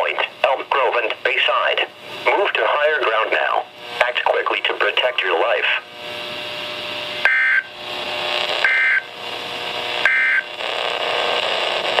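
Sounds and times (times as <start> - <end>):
radio hiss: 0.0 - 6.6, 7.2 - 12.0
digital data tone bursts: 8.6 - 9.1, 10.0 - 10.5.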